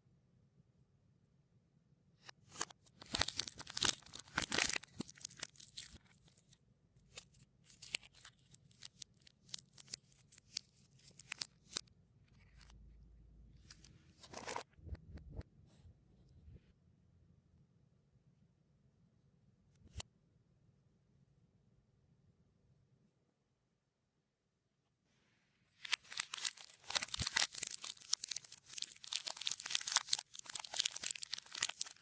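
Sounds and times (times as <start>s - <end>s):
plastic wrappers crinkling in reverse: 3.0s - 6.0s, 25.9s - 32.0s.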